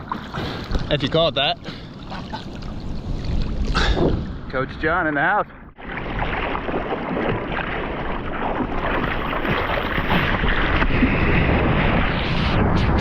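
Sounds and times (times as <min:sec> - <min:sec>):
wind buffeting microphone: 0:05.8 - 0:13.0.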